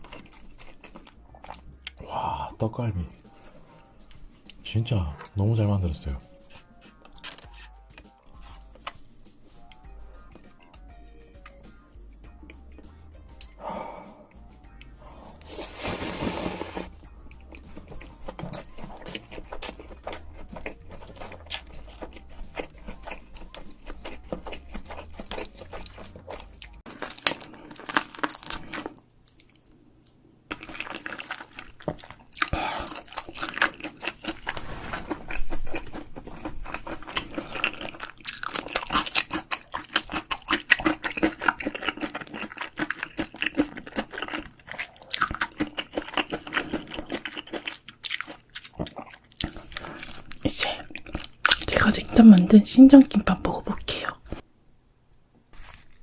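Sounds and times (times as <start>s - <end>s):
crunching and chewing: 0.0s - 2.0s, 6.3s - 11.7s, 14.7s - 54.4s, 55.5s - 56.0s
crackling bites: 55.5s - 56.0s.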